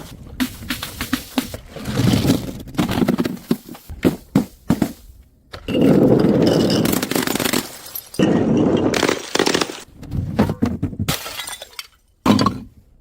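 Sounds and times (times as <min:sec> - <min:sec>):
glass bottles shattering: 0:05.7 - 0:09.8, 0:11.1 - 0:12.6.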